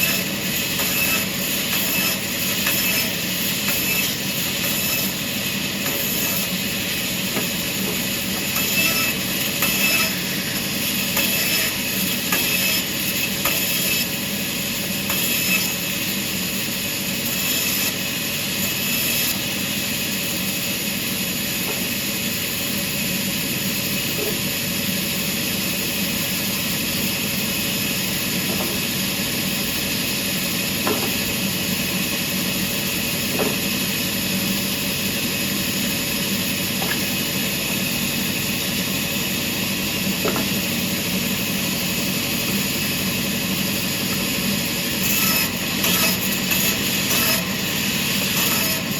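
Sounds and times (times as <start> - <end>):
sawmill machinery humming: 36.8 - 48.9.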